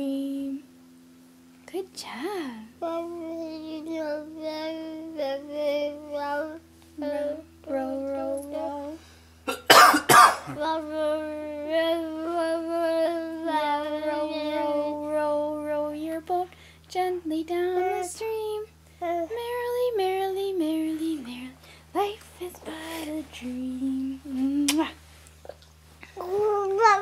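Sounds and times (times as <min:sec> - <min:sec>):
toddler singing: 0:02.8 - 0:09.0, 0:10.5 - 0:15.9, 0:17.5 - 0:20.0, 0:26.2 - 0:27.0.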